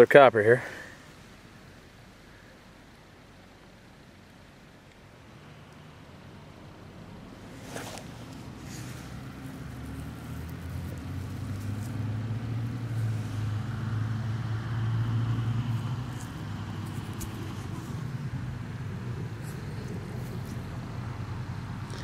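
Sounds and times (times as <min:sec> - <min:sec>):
vehicle engine passing by: 0:05.4 - 0:22.0.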